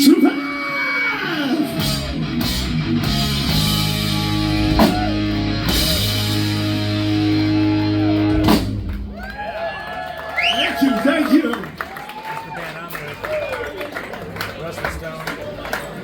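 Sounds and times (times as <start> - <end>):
bass guitar: 1.5 - 9.5
electric guitar chords: 1.6 - 9.1
drum kit: 1.7 - 9.5.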